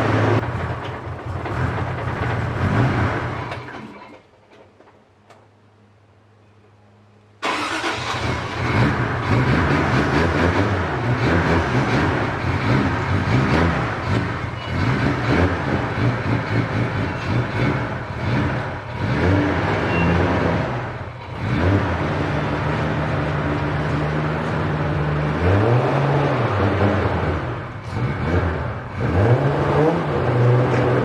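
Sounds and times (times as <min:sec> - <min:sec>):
car engine revving: 0:07.4 - 0:31.0.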